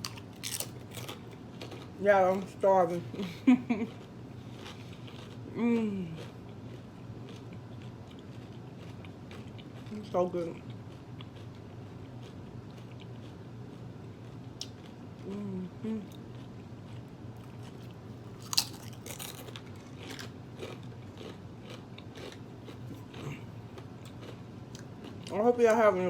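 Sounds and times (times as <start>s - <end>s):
crunchy bites: 0.0s - 2.0s, 17.4s - 25.3s
person chewing food: 0.0s - 2.5s, 3.3s - 10.0s, 10.6s - 25.4s.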